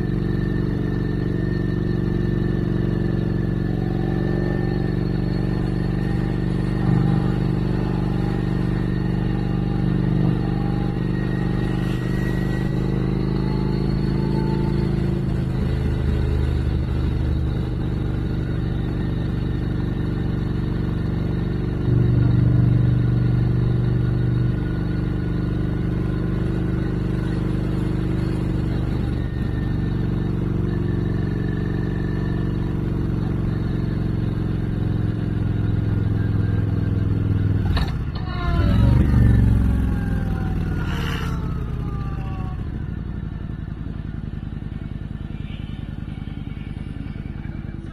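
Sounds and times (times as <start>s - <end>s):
motorcycle engine running: 0.0s - 47.9s.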